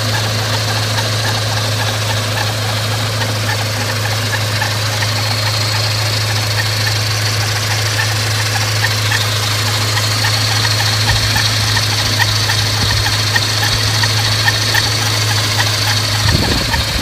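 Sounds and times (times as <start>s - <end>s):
car engine running steadily: 0.0s - 17.0s
light repeating ticking: 0.0s - 17.0s
low hum: 0.0s - 17.0s
supercharger whine: 0.0s - 17.0s.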